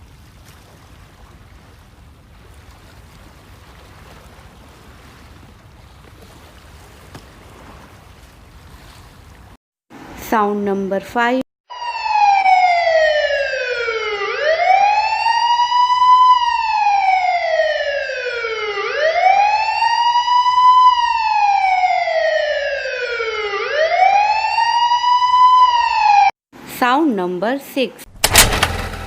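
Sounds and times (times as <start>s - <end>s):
emergency vehicle siren wailing: 11.7s - 26.4s.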